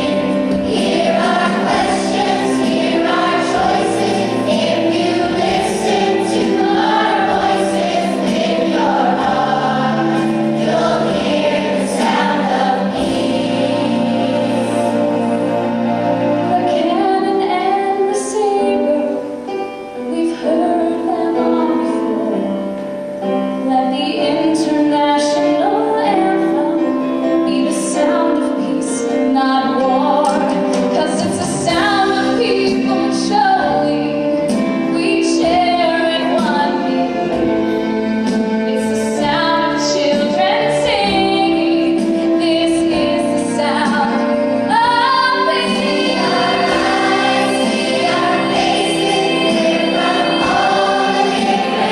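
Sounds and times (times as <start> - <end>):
women singing together: 0.0 - 15.5, 27.5 - 37.4, 38.7 - 51.9
backing accompaniment: 0.0 - 24.2, 26.8 - 51.9.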